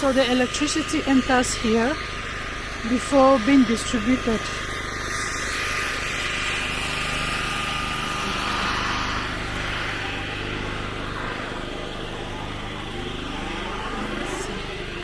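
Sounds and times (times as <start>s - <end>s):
engine running: 0.0s - 15.0s
hiss: 5.0s - 15.0s.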